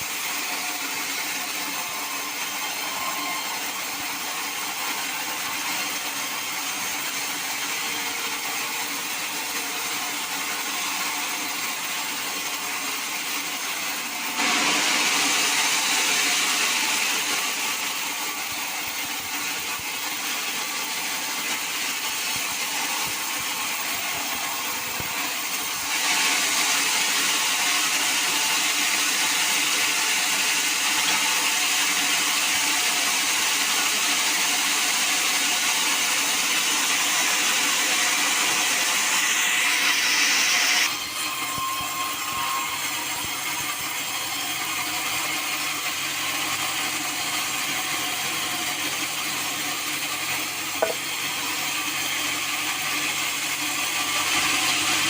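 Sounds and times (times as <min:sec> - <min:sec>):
sawmill saw running: 0:00.0 - 0:55.0.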